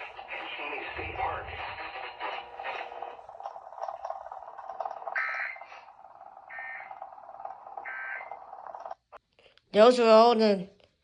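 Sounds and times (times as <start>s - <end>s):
radio hiss: 0.0s - 4.1s, 5.1s - 7.1s
digital data squawks: 2.0s - 9.0s.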